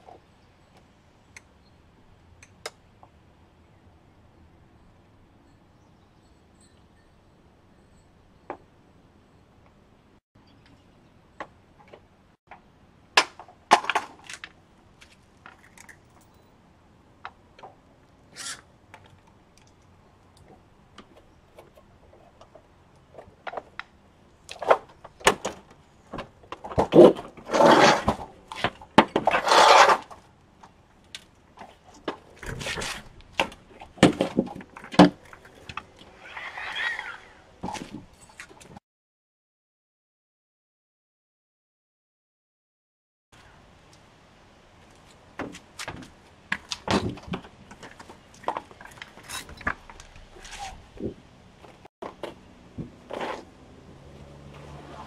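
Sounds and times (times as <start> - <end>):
loud scraping: 27.0 - 28.2, 29.2 - 30.2.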